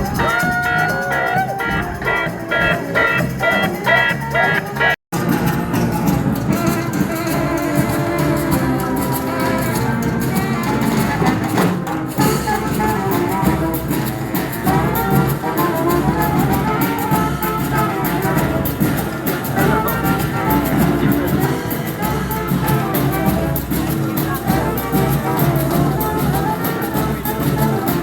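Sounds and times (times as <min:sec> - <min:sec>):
street band playing: 0:00.0 - 0:28.0.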